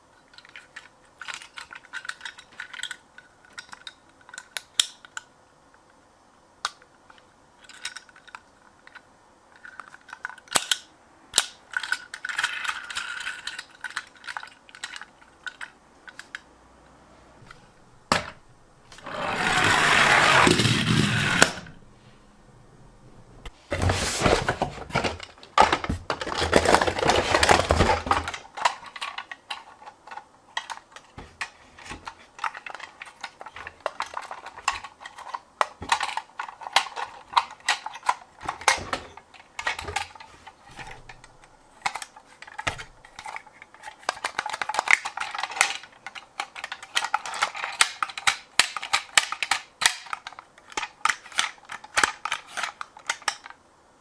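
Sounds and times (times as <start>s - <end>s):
toy vehicles rattling: 24.5s - 53.6s.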